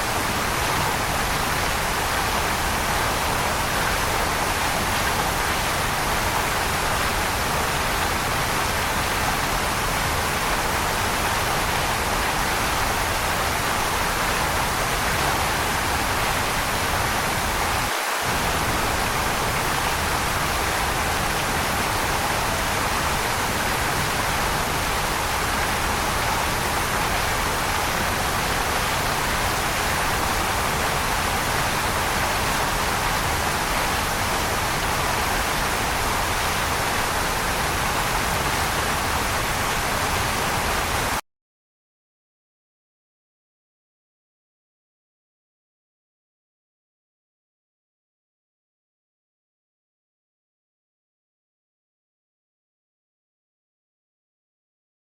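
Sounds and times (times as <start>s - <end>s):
waterfall rushing: 0.0s - 41.2s.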